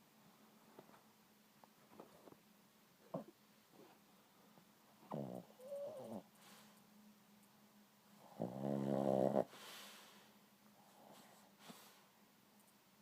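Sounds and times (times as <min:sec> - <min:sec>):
pet snoring: 0:05.1 - 0:06.3, 0:08.2 - 0:09.6.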